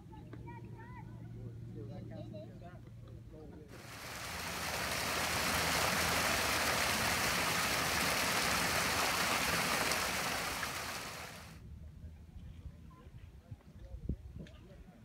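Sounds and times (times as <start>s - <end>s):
flowing water rushing: 3.8s - 11.6s.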